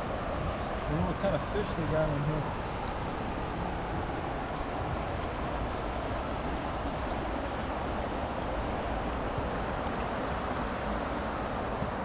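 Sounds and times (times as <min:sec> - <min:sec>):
river water rushing: 0:00.0 - 0:12.0.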